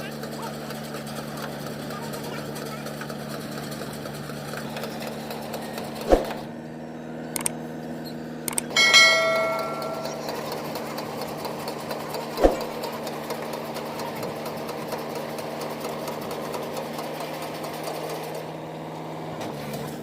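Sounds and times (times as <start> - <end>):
tractor diesel engine running: 0.0 - 20.0
thump: 12.4 - 12.7.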